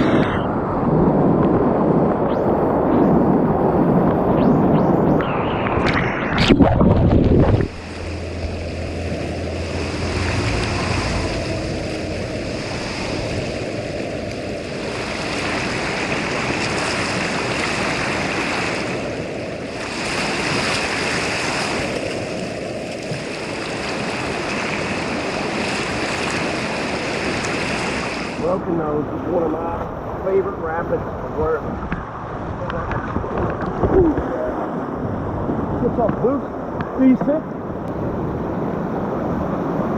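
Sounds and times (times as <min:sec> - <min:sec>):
river rapids rushing: 0:07.7 - 0:29.3.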